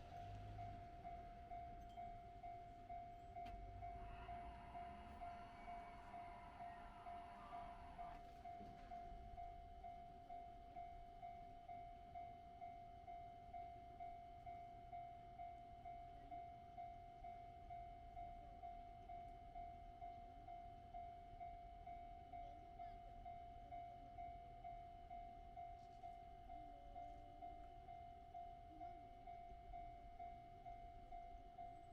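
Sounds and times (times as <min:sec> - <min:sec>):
level crossing warning bell: 0:00.0 - 0:31.9.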